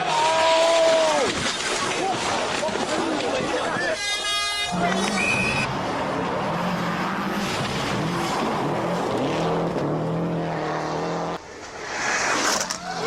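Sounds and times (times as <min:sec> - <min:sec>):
tyre and road noise: 0:00.0 - 0:13.0
rally car engine revving: 0:04.6 - 0:11.4.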